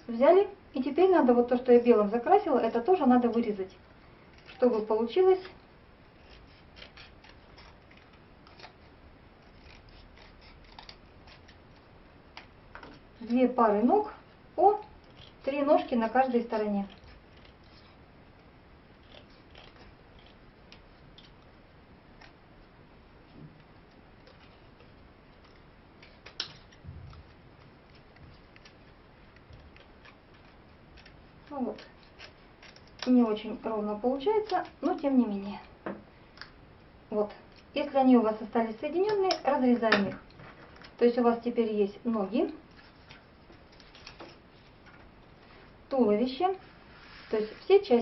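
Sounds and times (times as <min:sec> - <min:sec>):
scissors cutting cardboard: 0:06.2 - 0:11.8, 0:19.0 - 0:21.5, 0:23.9 - 0:33.4
scissors snipping cardboard: 0:09.4 - 0:11.6.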